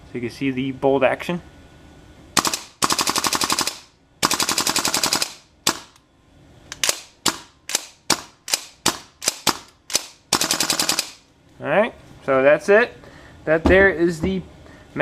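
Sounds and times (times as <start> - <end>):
airsoft rifle firing: 2.4 - 5.9, 6.8 - 11.2.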